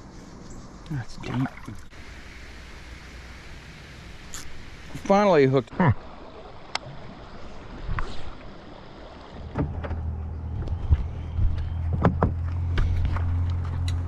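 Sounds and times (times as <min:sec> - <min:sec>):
low engine-like hum: 0:08.3 - 0:14.0.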